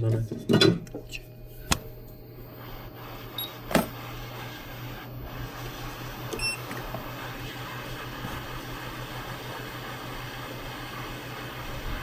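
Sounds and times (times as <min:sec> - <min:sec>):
sharp click: 0:01.7 - 0:01.9
hot air station blowing: 0:02.6 - 0:12.0
high beep: 0:03.4 - 0:03.6.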